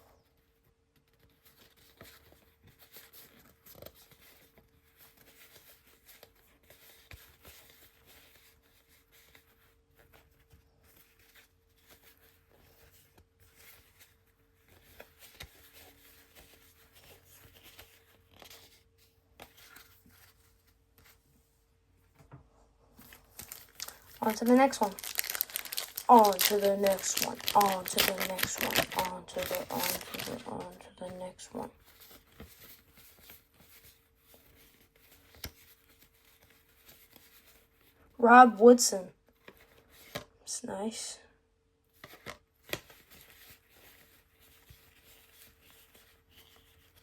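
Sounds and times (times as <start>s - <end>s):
cards flipped through by hand: 11.0s - 21.2s, 23.0s - 37.6s, 42.0s - 47.0s.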